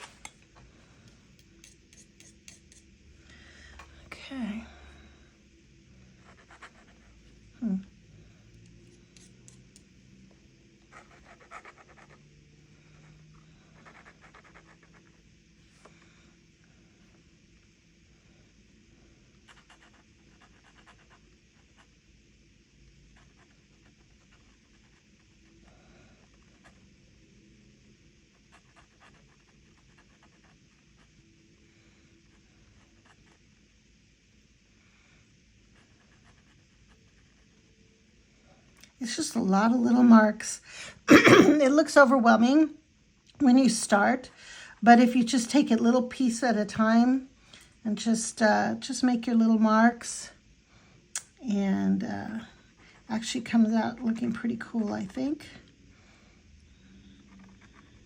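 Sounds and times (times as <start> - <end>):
pen nib scratching on paper: 1.4 - 2.9, 6.2 - 7.2, 8.9 - 9.8, 10.9 - 12.2, 13.0 - 15.2, 19.4 - 22.0, 28.3 - 31.2.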